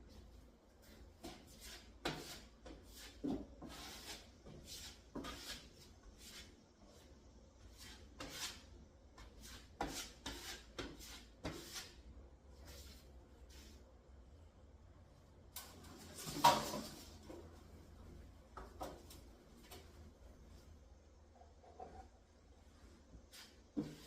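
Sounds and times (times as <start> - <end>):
taping knife scraping drywall: 1.2 - 6.5, 7.7 - 12.0.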